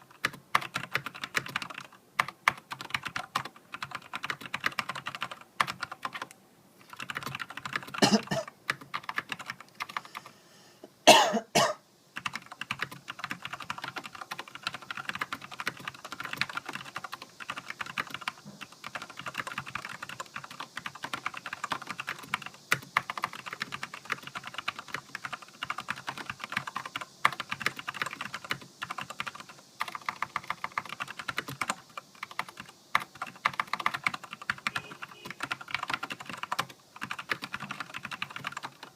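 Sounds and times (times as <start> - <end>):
mechanical keyboard typing: 0.0 - 8.0, 8.7 - 10.3, 12.2 - 38.9.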